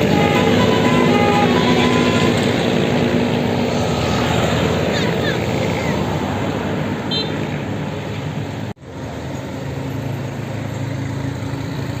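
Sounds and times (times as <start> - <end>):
bus engine running: 0.0 - 7.0
road traffic noise: 0.0 - 12.0.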